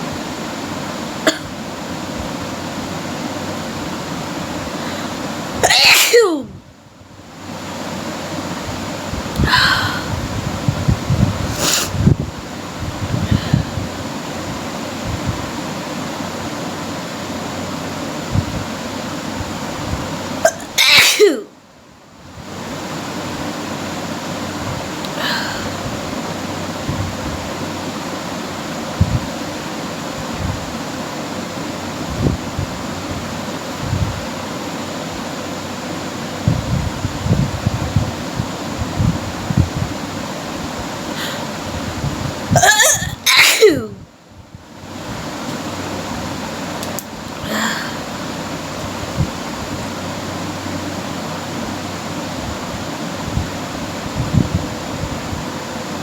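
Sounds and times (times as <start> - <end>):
steady hiss: 0.0 - 21.6, 22.4 - 56.0
noisy breath: 4.7 - 5.2, 11.4 - 12.1, 13.1 - 14.0, 25.1 - 26.0, 41.1 - 41.6, 47.4 - 48.4
woman sneezing: 5.6 - 6.5, 20.5 - 21.5, 42.6 - 44.0.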